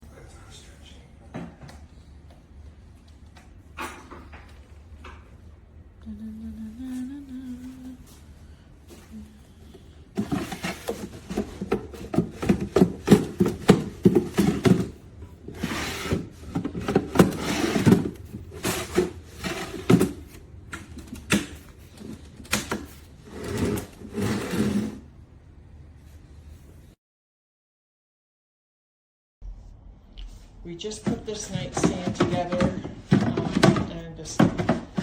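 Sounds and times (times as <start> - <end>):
wooden drawers knocking and scraping: 10.1 - 25.0, 31.0 - 35.0.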